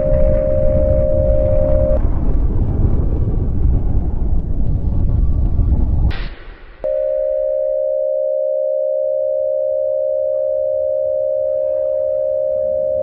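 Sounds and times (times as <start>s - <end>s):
steady electronic alert tone: 0.0s - 2.0s, 6.8s - 13.0s
rumbling noise: 0.0s - 7.5s.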